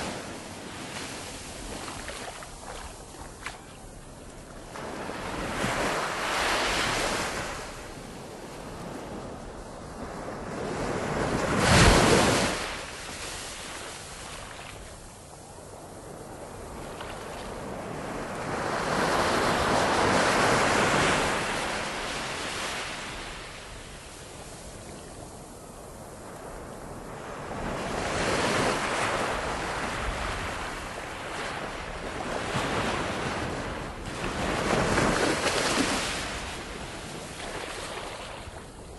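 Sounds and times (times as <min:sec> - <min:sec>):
ocean waves breaking: 0:00.0 - 0:08.0, 0:10.0 - 0:14.8, 0:27.2 - 0:38.8.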